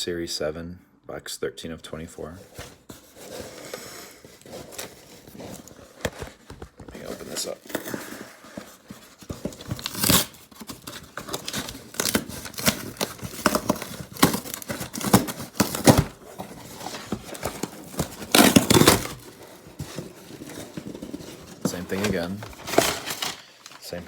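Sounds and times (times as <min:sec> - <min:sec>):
paper crumpling: 0:02.5 - 0:24.0
paper tearing: 0:09.4 - 0:24.0.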